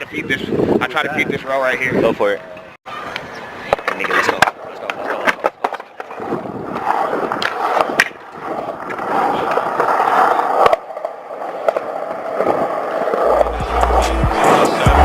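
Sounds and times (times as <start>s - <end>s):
skateboard wheels rolling on concrete: 0.0s - 15.0s
skateboard clacks: 3.1s - 15.0s.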